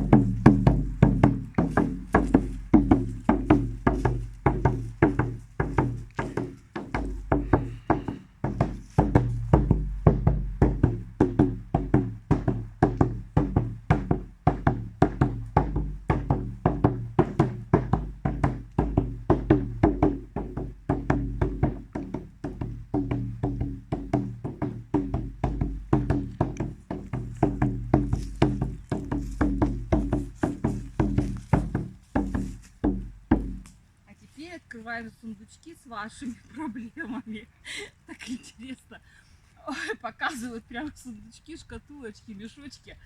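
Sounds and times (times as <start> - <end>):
percussive beat: 0.0 - 33.7.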